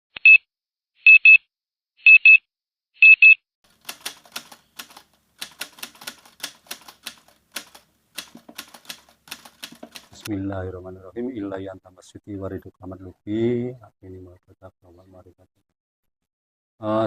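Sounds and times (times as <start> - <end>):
typewriter key clicks: 3.8 - 10.3.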